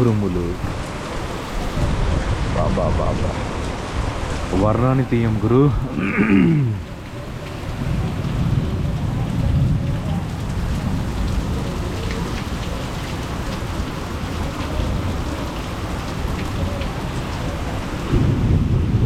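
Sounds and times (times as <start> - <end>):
heavy rain falling: 0.0 - 19.0
low rumble of thunder: 7.6 - 12.6, 18.0 - 19.0.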